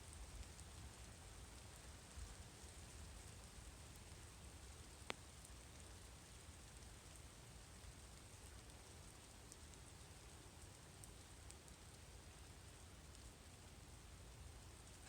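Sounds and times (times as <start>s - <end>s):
light rain hiss: 0.0s - 15.0s
rain ticks: 0.1s - 13.7s.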